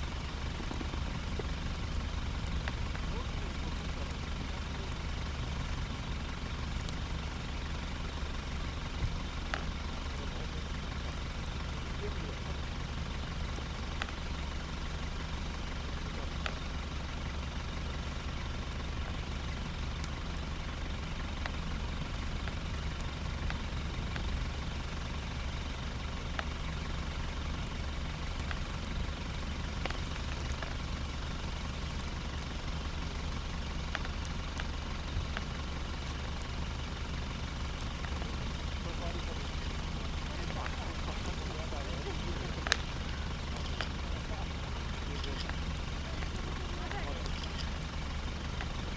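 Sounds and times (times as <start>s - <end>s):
vehicle engine idling: 0.0s - 48.9s
faint clicks: 9.0s - 12.2s, 12.9s - 14.4s, 21.2s - 48.9s.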